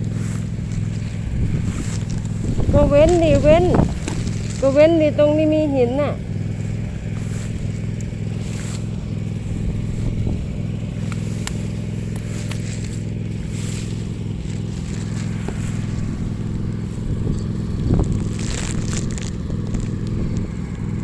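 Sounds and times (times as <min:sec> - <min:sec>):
brush cutter engine running: 0:00.0 - 0:21.0.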